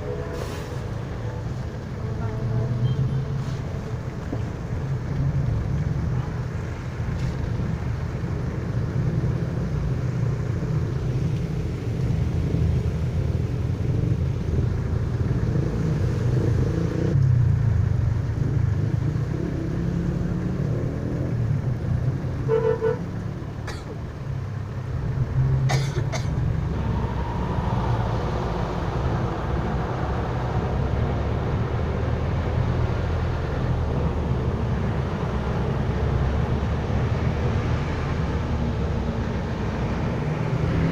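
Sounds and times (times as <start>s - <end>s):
vehicle engine and road rumble: 0.0s - 40.9s
vehicle horn toot: 22.5s - 23.0s.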